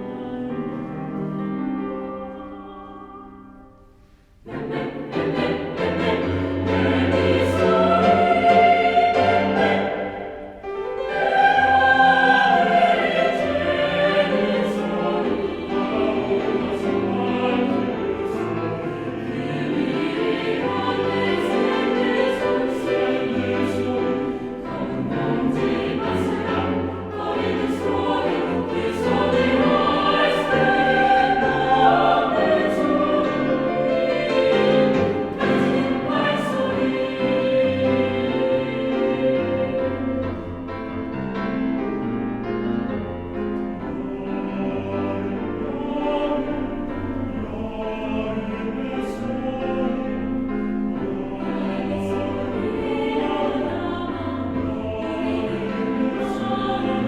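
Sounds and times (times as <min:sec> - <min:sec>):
mixed choir singing bossa nova: 0:04.5 - 0:40.4, 0:44.0 - 0:57.0.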